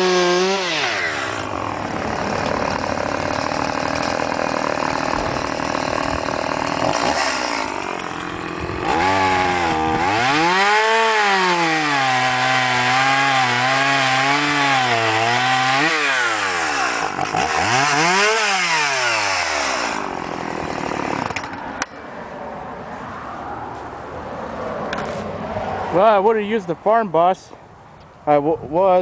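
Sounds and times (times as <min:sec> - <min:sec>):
chainsaw cutting a log: 0:00.0 - 0:21.8.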